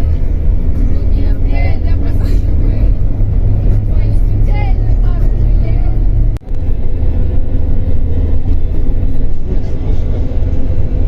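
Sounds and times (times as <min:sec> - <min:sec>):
vehicle rumble from inside: 0:00.0 - 0:11.0.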